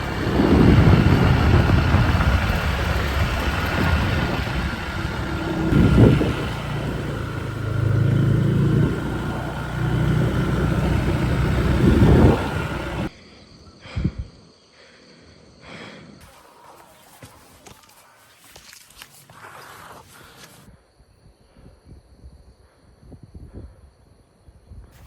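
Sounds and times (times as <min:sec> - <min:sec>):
steady rushing noise: 0:00.0 - 0:08.0, 0:08.7 - 0:13.1
vehicle engine humming: 0:00.0 - 0:13.1.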